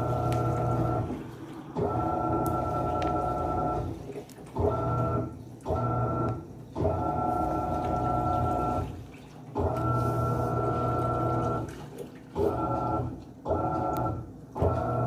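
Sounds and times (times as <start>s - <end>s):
washing machine motor humming: 0.0s - 15.0s.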